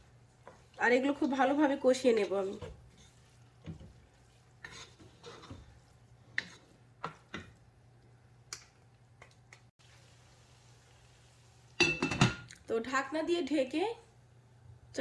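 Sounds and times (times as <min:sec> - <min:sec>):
spoon stirring in cooking pot: 0:00.0 - 0:08.1.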